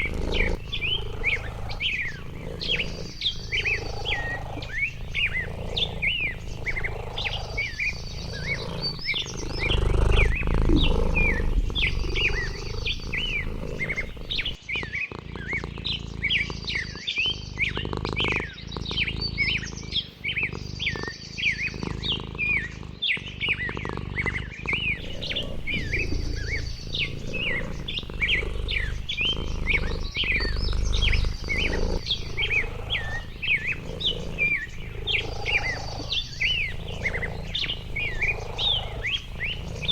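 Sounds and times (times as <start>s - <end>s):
bird trill: 0.0s - 15.1s, 23.4s - 39.9s
small birds chirping: 0.0s - 39.9s.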